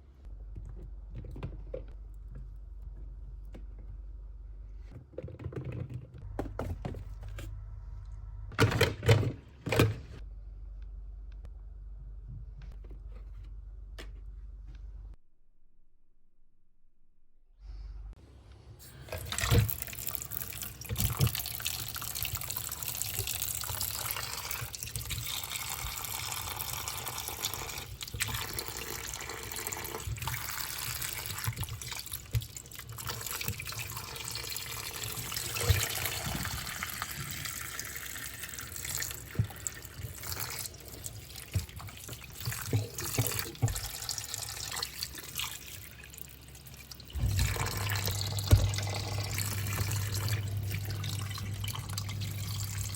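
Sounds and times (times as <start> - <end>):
objects knocking and clattering: 4.9 - 7.5
tap water running into sink: 19.1 - 52.9.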